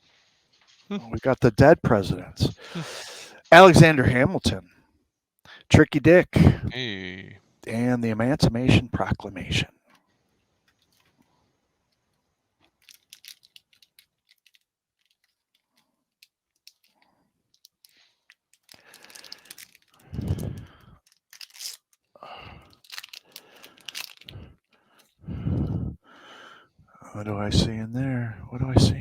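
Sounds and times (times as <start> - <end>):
wrapper tearing and crinkling: 12.7 - 15.7, 17.6 - 24.4.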